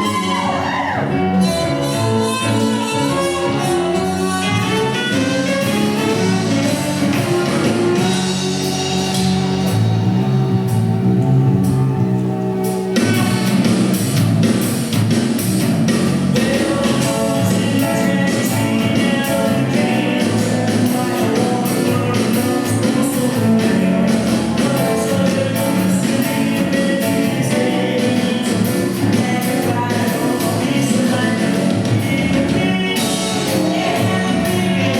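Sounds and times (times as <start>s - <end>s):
person singing: 0.0s - 8.2s, 16.3s - 34.9s
drums beat: 0.0s - 11.8s, 12.6s - 34.9s
guitar: 0.0s - 34.9s.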